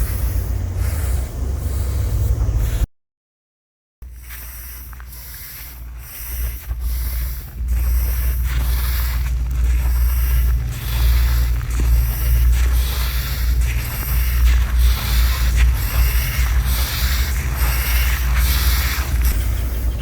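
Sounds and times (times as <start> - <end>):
steady low rumble: 0.0 - 2.9, 4.0 - 20.0
rice grain rustling swishes: 4.0 - 20.0.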